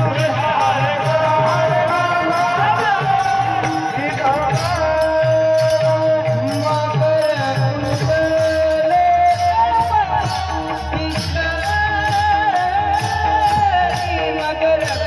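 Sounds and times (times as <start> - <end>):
devotional melody: 0.0 - 15.0
repeating drum beat: 0.0 - 15.0.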